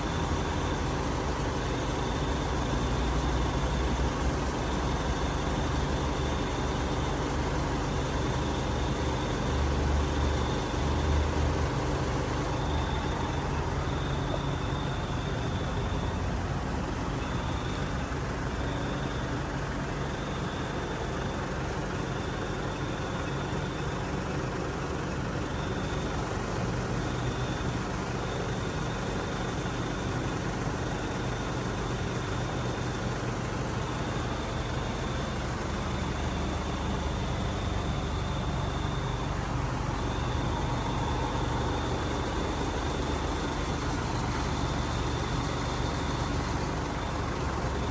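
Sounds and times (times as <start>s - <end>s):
vehicle engine running: 0.0s - 28.0s, 33.3s - 47.9s
faint high-pitched tone: 12.4s - 26.1s, 35.9s - 47.9s.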